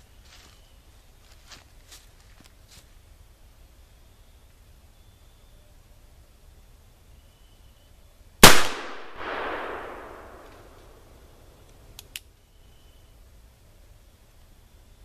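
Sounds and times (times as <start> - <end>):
revolver shot echoing: 8.4 - 10.8.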